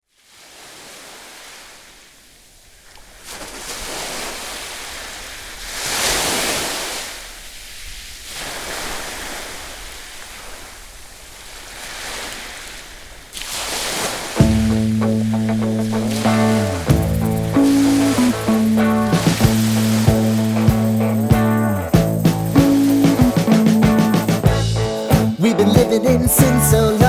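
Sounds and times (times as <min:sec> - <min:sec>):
surf breaking on beach: 0:03.2 - 0:26.2
music: 0:14.4 - 0:27.0.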